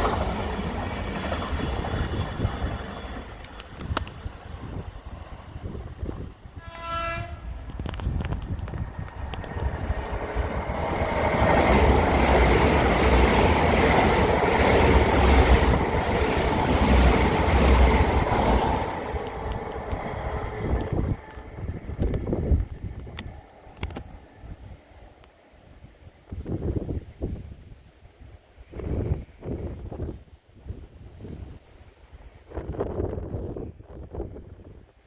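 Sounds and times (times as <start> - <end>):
train wheels on rails: 0.0 - 25.4
train horn: 6.5 - 7.8.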